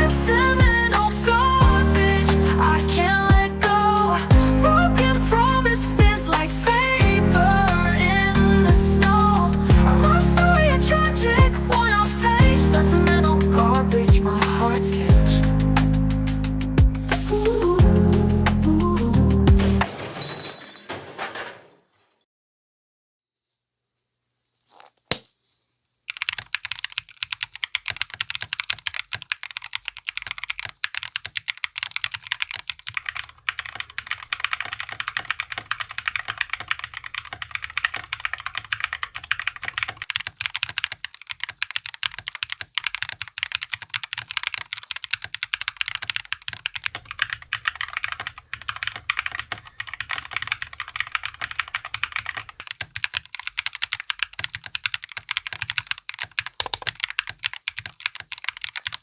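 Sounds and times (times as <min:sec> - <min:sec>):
fast mechanical keyboard typing: 0:26.1 - 0:59.0.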